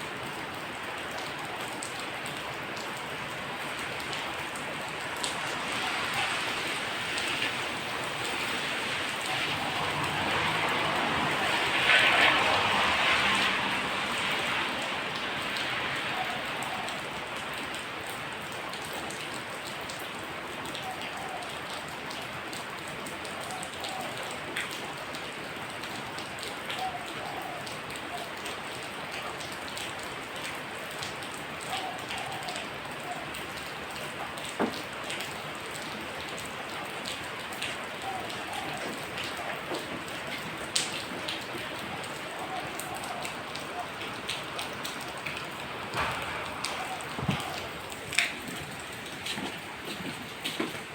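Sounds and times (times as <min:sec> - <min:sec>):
steady rain falling: 0:00.0 - 0:50.9
water drips ticking: 0:27.6 - 0:50.9.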